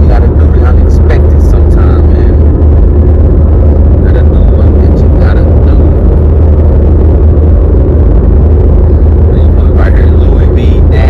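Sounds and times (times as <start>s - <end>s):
car cabin road and engine rumble: 0.0s - 11.0s.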